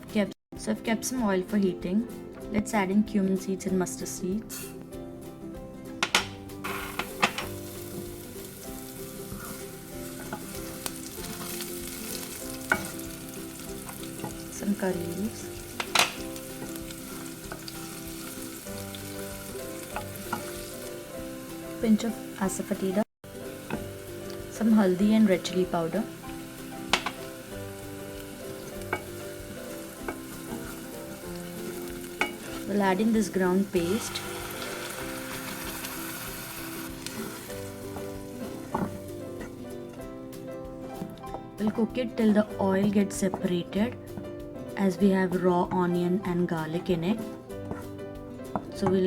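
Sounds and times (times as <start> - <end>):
seeds sizzling in hot oil: 6.5 - 39.7
spoon clicking against pan: 15.8 - 16.8, 26.9 - 27.2.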